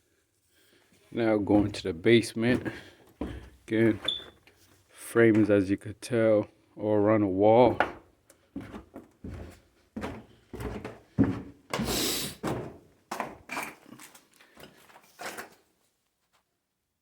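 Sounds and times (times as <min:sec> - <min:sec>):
footsteps going down stairs: 0:01.1 - 0:04.4, 0:05.3 - 0:05.6, 0:07.7 - 0:14.8
scuffing scrape: 0:08.6 - 0:14.2.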